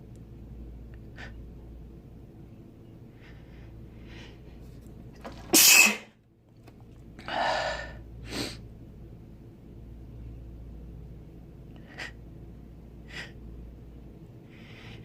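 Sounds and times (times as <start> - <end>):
man sneezing: 5.4 - 6.1.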